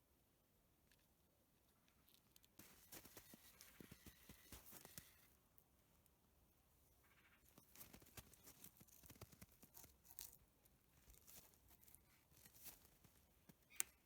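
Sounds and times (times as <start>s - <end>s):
faint scratching and rustling: 1.7s - 5.4s, 7.0s - 14.0s.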